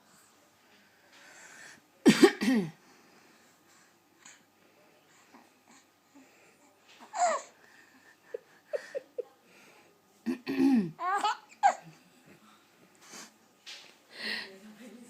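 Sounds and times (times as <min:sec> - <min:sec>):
adult coughing: 0:02.1 - 0:02.8, 0:10.3 - 0:11.0
baby laughing: 0:11.0 - 0:11.9.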